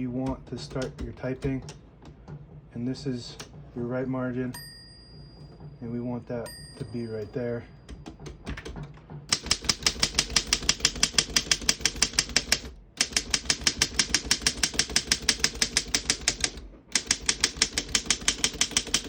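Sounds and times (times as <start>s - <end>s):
manual typewriter typing: 0.0s - 1.8s, 6.8s - 19.0s.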